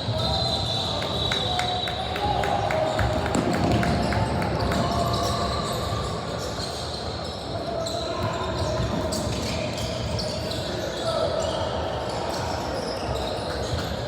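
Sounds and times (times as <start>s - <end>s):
murmur of voices: 0.0s - 14.0s
basketball bouncing on gym floor: 2.4s - 5.4s.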